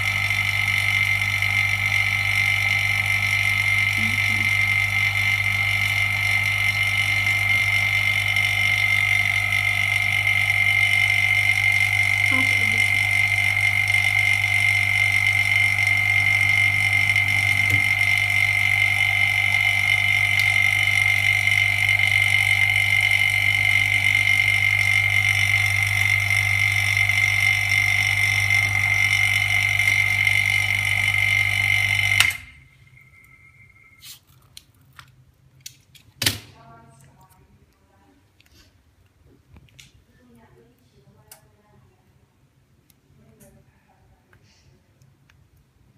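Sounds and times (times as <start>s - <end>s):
machine humming and whining: 0.0s - 34.0s.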